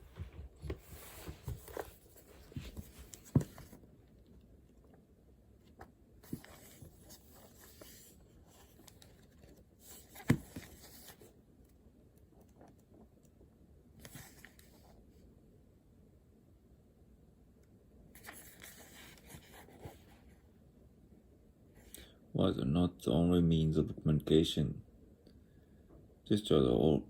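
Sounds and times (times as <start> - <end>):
paper rustling: 5.8 - 11.3.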